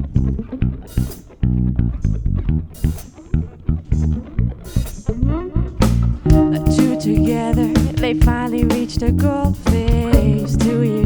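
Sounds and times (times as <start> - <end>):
live band playing: 6.2 - 11.0
cymbal hits: 6.3 - 10.6.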